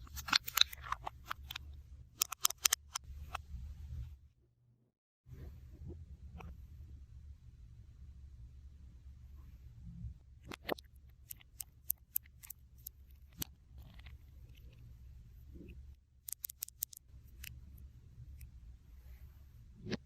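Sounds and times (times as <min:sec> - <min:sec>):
sharp clicks and snips: 0:00.0 - 0:03.4, 0:10.4 - 0:14.8, 0:16.2 - 0:17.6
steady low hum: 0:05.3 - 0:20.0.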